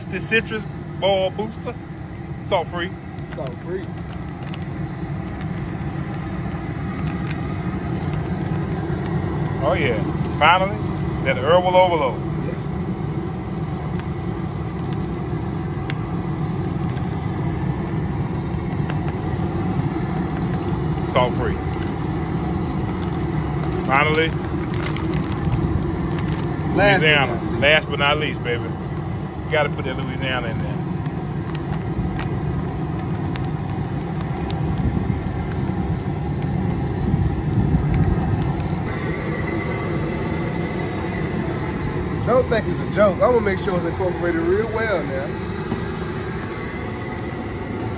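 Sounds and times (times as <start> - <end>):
gas burner rumbling: 0.0 - 47.9.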